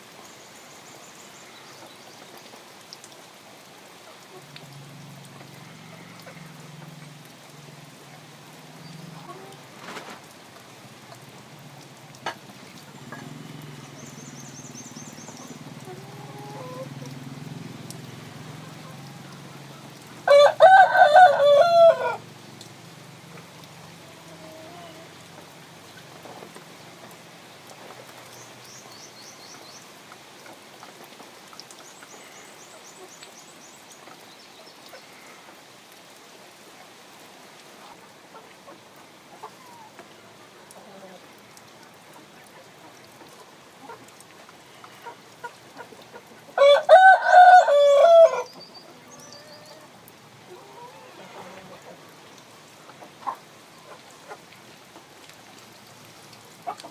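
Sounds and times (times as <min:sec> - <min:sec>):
small birds chirping: 0:12.4 - 0:17.2, 0:26.7 - 0:30.0, 0:48.4 - 0:49.9
rooster crowing: 0:20.3 - 0:22.2, 0:46.6 - 0:48.5.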